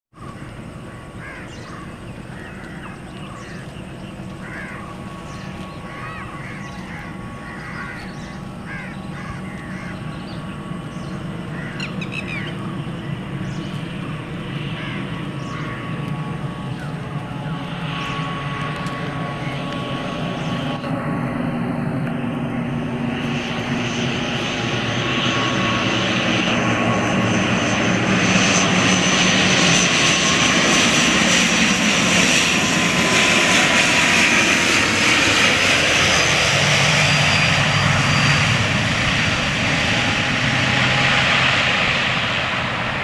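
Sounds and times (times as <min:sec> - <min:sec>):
turboprop aircraft drone: 0:00.1 - 0:43.0
short bird calls: 0:00.3 - 0:13.8.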